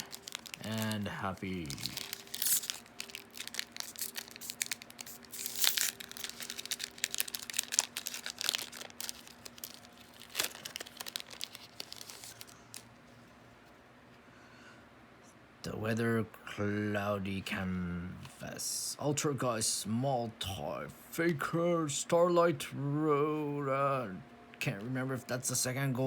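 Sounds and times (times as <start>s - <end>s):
foil wrapper tearing and crinkling: 0.0s - 12.9s.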